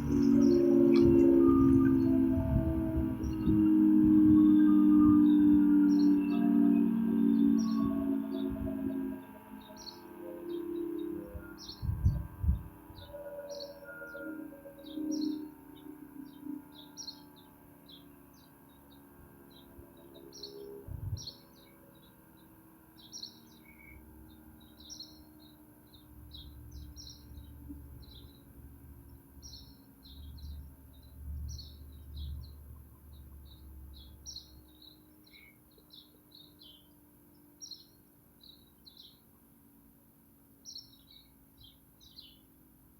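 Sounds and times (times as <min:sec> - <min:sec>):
low rumble: 0:00.0 - 0:06.0, 0:11.3 - 0:13.2
birds chirping: 0:00.0 - 0:42.9.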